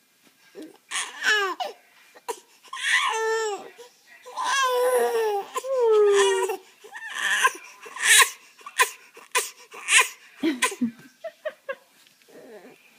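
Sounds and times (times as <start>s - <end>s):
baby crying: 0.9s - 10.2s, 12.3s - 12.8s.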